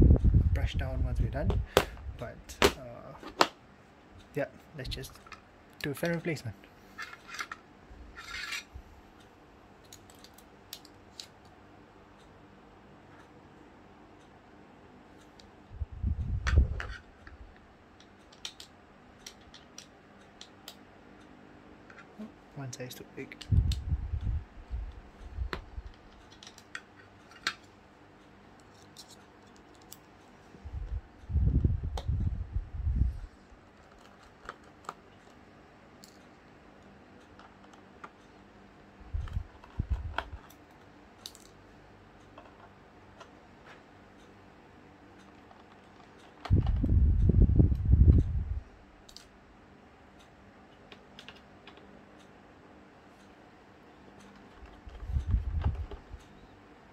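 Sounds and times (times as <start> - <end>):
small tools clicking and tapping: 39.2 - 41.6.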